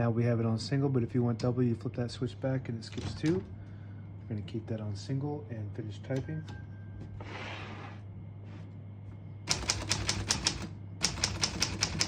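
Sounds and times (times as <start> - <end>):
typewriter keys striking: 9.5 - 12.0.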